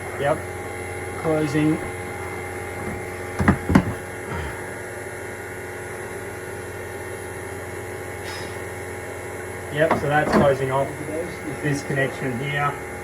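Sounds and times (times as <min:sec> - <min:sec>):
vacuum pump humming: 0:00.0 - 0:13.0
knocks: 0:02.8 - 0:04.0, 0:09.9 - 0:10.7.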